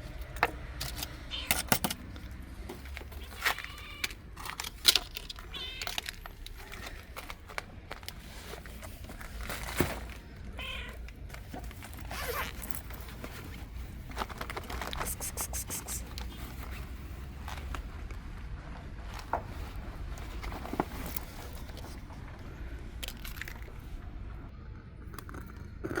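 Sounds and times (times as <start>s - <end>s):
small clicks and rustles: 0.2s - 10.3s, 11.0s - 24.0s
cat meowing: 1.3s - 1.7s, 3.2s - 4.1s, 5.4s - 6.0s, 10.6s - 11.0s.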